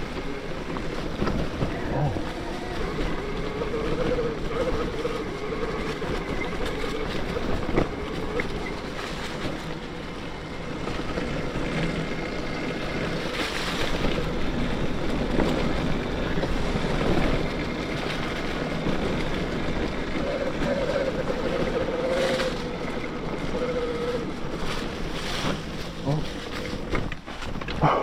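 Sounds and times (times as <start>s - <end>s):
wavering motor whine: 0.0s - 25.4s
electric bike ride noise: 0.0s - 28.0s.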